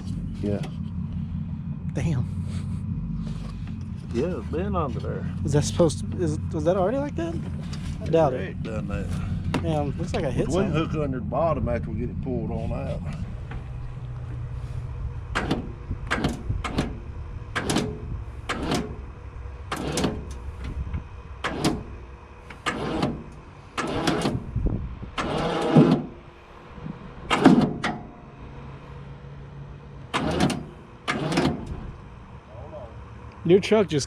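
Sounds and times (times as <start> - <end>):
vehicle engine running low: 0.0 - 34.0
short creaks and clunks: 7.3 - 10.3, 13.1 - 24.5, 25.2 - 26.3, 30.1 - 32.0.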